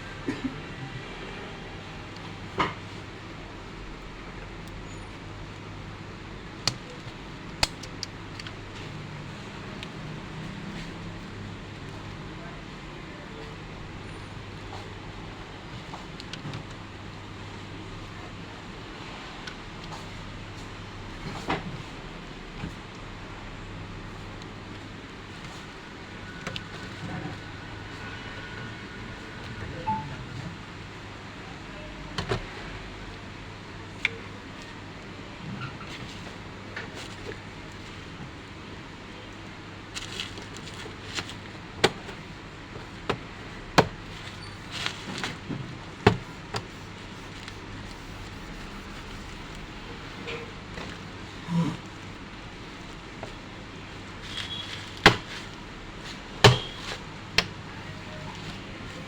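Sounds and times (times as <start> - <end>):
low background hum: 0.0 - 59.0
high beep: 29.8 - 30.2
steady low hum: 41.5 - 54.2.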